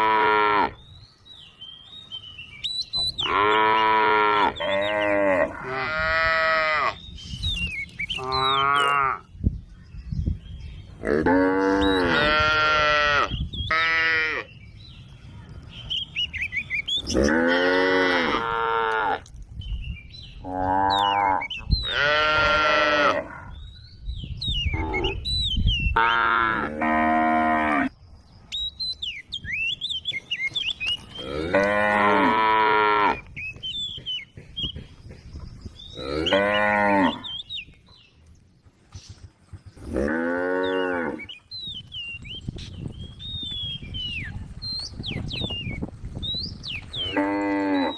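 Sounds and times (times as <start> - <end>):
cows mooing: 0.0 - 0.8, 3.2 - 7.0, 8.2 - 9.3, 11.0 - 14.5, 17.0 - 19.3, 20.4 - 23.6, 26.0 - 27.9, 31.1 - 33.3, 35.9 - 37.4, 39.9 - 41.3, 47.0 - 47.9.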